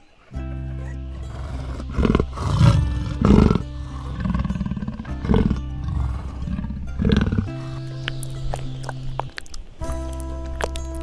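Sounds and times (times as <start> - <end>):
background music: 0.3 - 11.0
large animal roaring: 0.6 - 9.0.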